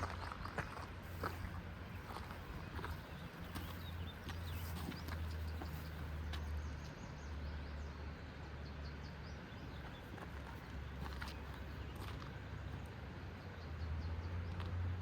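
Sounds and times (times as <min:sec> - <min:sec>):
footsteps on a trail: 0:00.0 - 0:07.0, 0:09.6 - 0:13.0.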